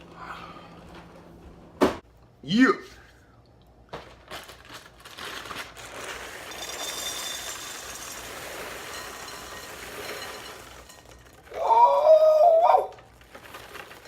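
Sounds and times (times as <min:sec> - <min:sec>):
cereal pouring into bowl: 0:05.1 - 0:11.7, 0:12.9 - 0:14.0.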